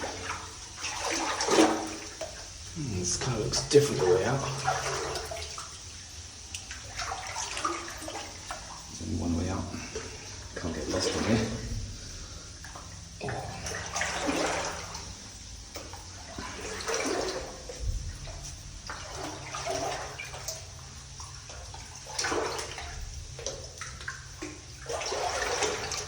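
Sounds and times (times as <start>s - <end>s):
footsteps splashing through water: 6.5s - 8.8s, 9.7s - 26.0s.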